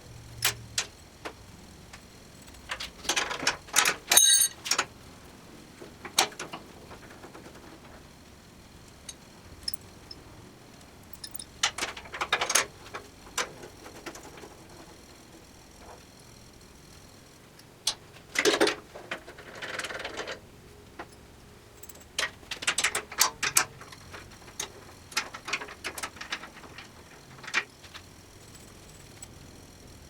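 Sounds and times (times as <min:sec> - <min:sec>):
hand tools and metal parts clinking: 0:01.9 - 0:04.9, 0:11.1 - 0:15.0, 0:21.8 - 0:29.3.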